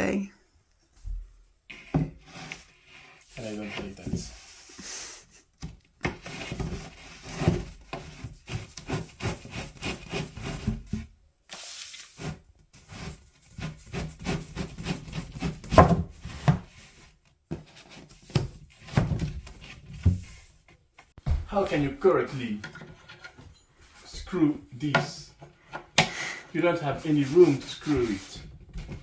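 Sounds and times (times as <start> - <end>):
particleboard panels rubbing and knocking: 1.7 - 4.4, 26.7 - 29.0.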